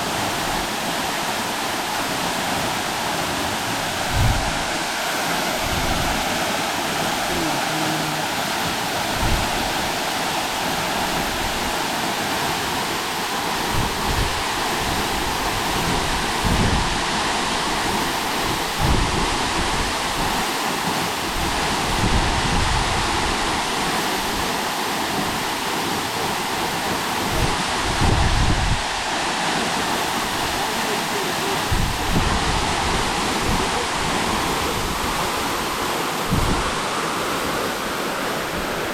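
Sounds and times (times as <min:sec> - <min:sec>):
wind rumble on microphone: 0:03.7 - 0:04.9, 0:05.5 - 0:06.4, 0:08.9 - 0:10.0, 0:13.6 - 0:20.4, 0:21.2 - 0:24.5, 0:27.2 - 0:29.0, 0:31.6 - 0:38.9.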